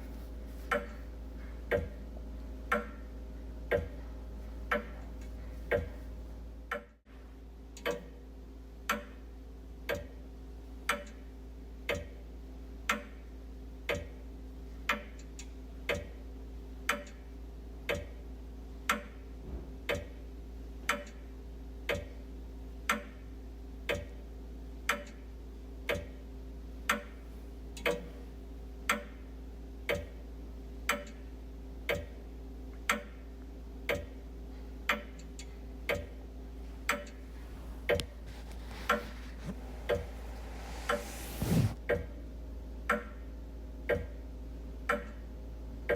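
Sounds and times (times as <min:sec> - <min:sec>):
low steady hum: 0:00.0 - 0:09.7, 0:32.3 - 0:41.8
wall clock ticking: 0:00.6 - 0:03.1, 0:03.7 - 0:06.1, 0:09.8 - 0:10.2, 0:10.9 - 0:12.3, 0:13.8 - 0:14.2, 0:14.9 - 0:16.2, 0:16.9 - 0:17.2, 0:17.8 - 0:18.2, 0:19.9 - 0:20.2, 0:20.8 - 0:22.2, 0:22.8 - 0:23.3, 0:23.9 - 0:24.2, 0:24.8 - 0:26.2, 0:26.8 - 0:27.2, 0:28.8 - 0:38.3, 0:43.9 - 0:44.2, 0:44.9 - 0:45.2.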